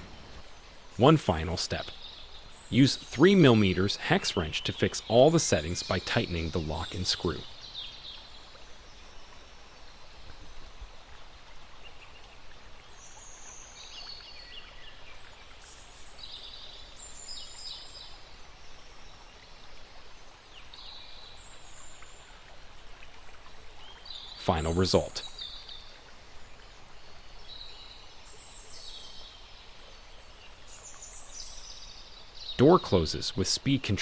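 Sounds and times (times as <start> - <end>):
small birds chirping: 0.0 - 0.5
background hiss: 0.0 - 6.0.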